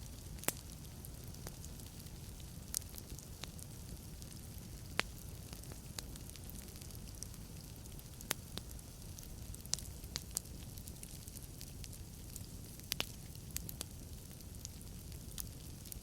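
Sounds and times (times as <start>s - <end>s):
fire crackles and pops: 0.0s - 16.0s
fire hiss and rumble: 0.0s - 16.0s.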